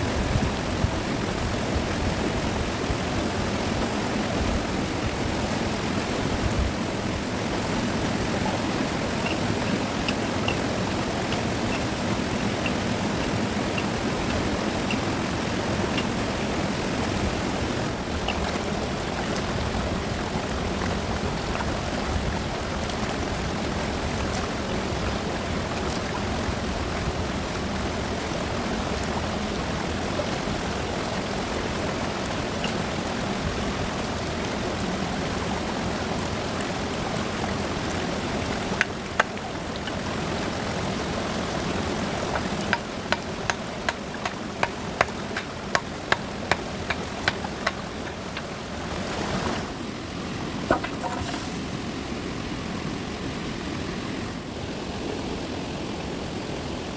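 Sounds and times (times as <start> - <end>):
fast river rushing: 0.0 - 56.9
sharp knocks: 42.4 - 48.5, 50.7 - 51.4.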